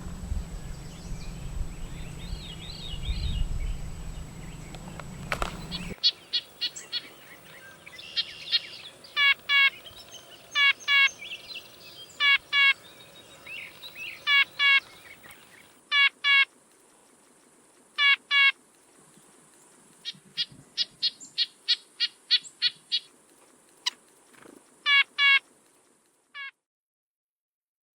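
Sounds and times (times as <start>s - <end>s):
bird calling: 0.0s - 16.5s, 18.0s - 18.6s, 20.0s - 23.2s, 23.8s - 25.5s.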